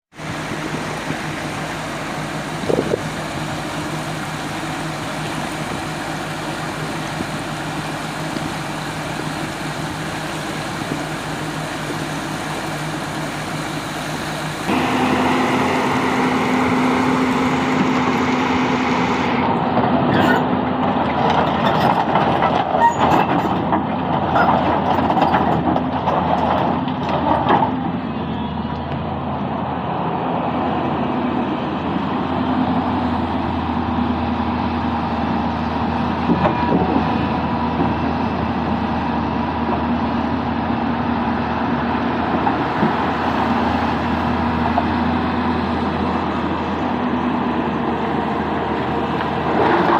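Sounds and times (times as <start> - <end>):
excavator diesel engine running: 0.1 - 49.9
knocks and clatter: 19.8 - 28.0.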